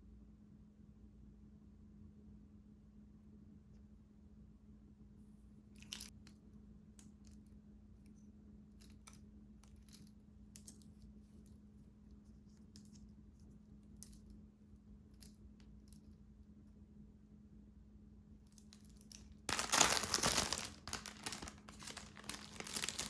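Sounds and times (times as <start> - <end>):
faint steady hum: 0.0 - 23.0
small objects clicking and tapping: 18.5 - 23.0.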